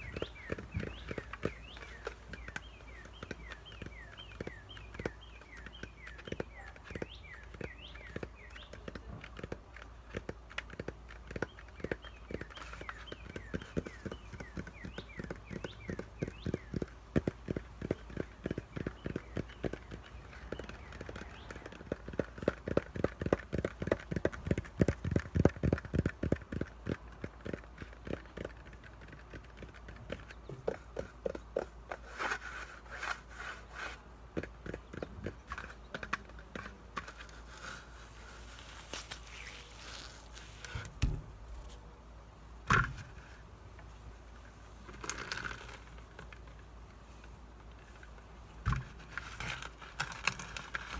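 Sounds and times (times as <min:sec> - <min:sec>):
fingers tapping on foam: 0:00.0 - 0:33.7, 0:34.3 - 0:37.6
scratching on foam: 0:27.5 - 0:34.1, 0:34.7 - 0:41.8.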